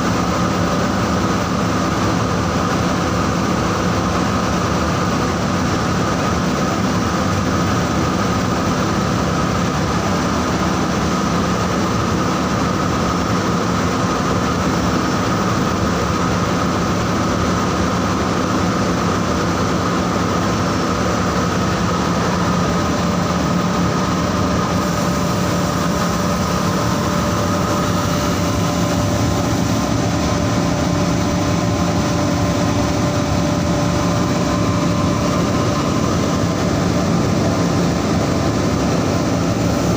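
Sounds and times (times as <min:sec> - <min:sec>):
carding machine droning: 0:21.3 - 0:39.9.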